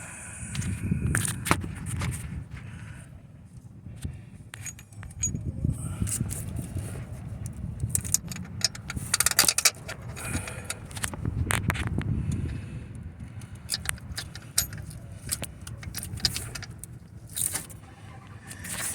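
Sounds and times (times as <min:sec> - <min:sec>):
metal tools clinking: 0:04.6 - 0:05.5, 0:07.8 - 0:11.1, 0:13.6 - 0:17.8.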